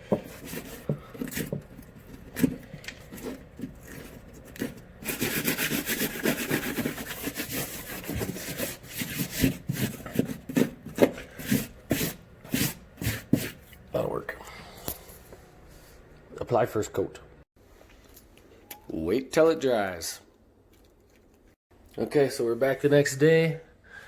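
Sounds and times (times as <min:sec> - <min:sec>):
scraping drywall: 0:00.0 - 0:13.6.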